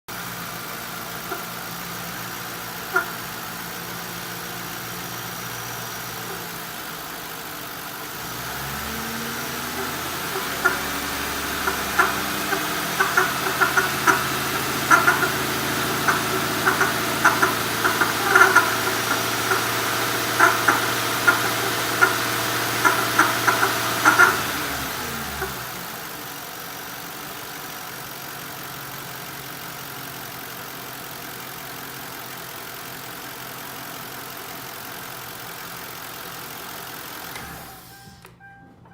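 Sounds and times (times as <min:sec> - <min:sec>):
car engine idling: 0:00.1 - 0:38.9
engine winding down: 0:00.1 - 0:38.9
water pump knocking and clicking: 0:09.8 - 0:24.6.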